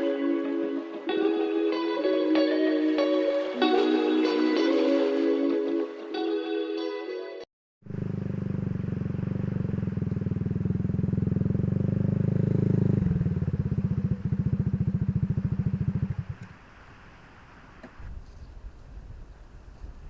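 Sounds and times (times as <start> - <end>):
motorcycle engine running: 7.8 - 16.4.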